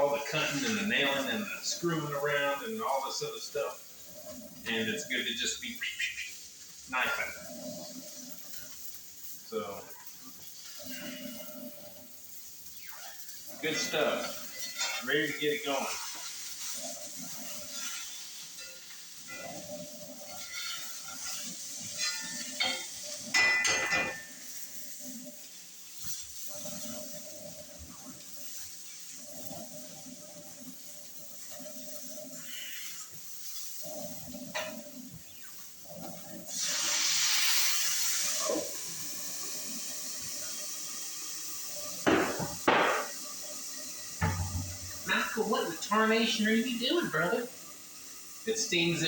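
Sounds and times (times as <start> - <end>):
food sizzling in a frying pan: 0.0 - 49.0
cookware clattering: 20.3 - 24.6, 42.1 - 43.2, 44.2 - 45.1.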